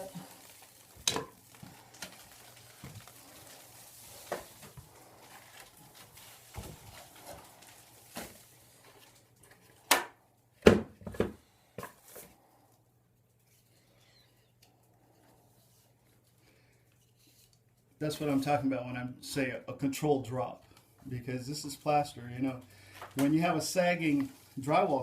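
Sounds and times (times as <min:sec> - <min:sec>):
plaster ceiling chunks falling: 0:00.1 - 0:07.4
knocks and clatters of debris: 0:00.9 - 0:03.2.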